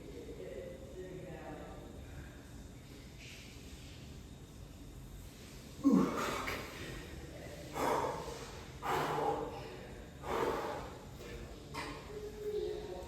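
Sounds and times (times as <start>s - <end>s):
man breathing hard: 5.7s - 11.4s
man grunting: 5.8s - 6.7s.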